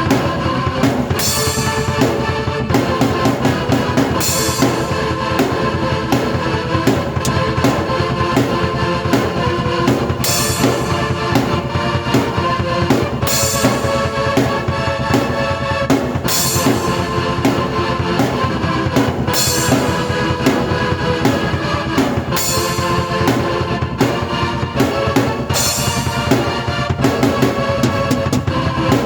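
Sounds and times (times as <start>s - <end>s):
keyboard chords: 0.0s - 29.0s
rock drum groove: 0.0s - 29.0s
cymbal crashes: 25.5s - 26.7s.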